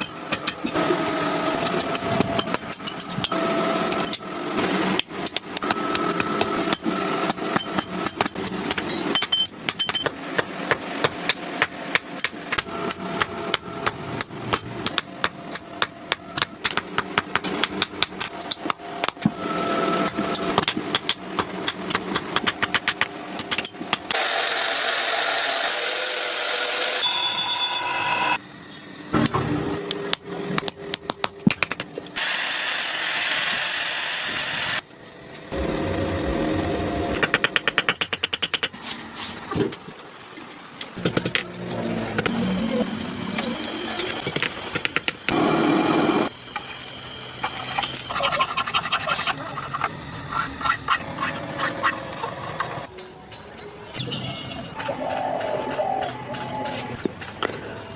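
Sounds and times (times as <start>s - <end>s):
steady machine hum: 32.2s - 37.5s.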